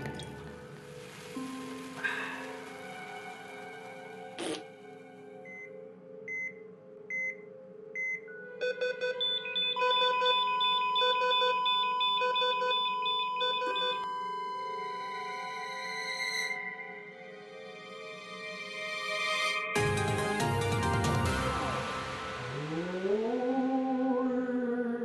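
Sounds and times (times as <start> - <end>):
fast pulsing electronic alarm: 8.8 - 14.9.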